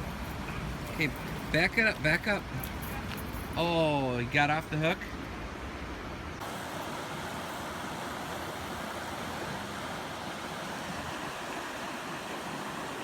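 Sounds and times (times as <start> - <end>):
water rushing over rapids: 3.6 - 13.0.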